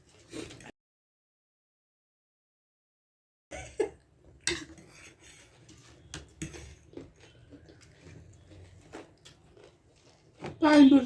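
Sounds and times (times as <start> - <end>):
cutlery clinking against dishes: 4.4 - 7.3.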